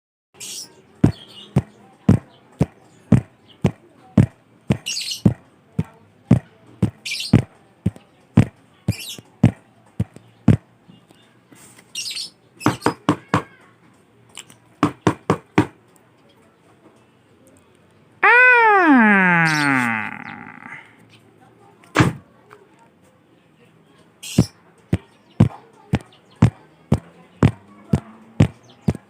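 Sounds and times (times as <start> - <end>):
knocking on a door: 12.7 - 13.5, 14.8 - 15.8.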